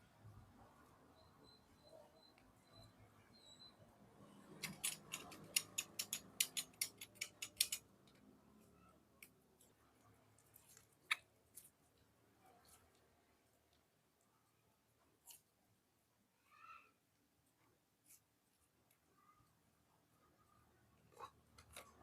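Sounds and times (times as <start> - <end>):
sharp small clicks and snaps: 4.6 - 8.3.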